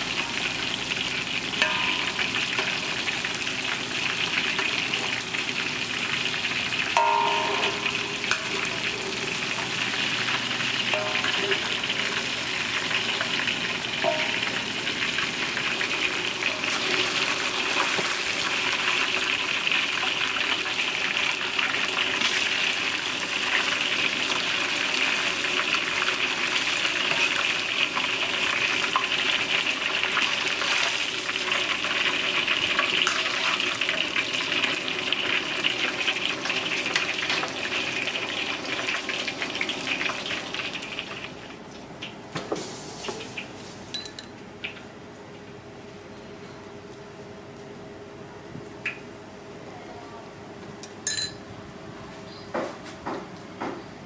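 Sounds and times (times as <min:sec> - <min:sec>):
food sizzling in hot oil: 0:00.0 - 0:41.8, 0:42.4 - 0:43.9.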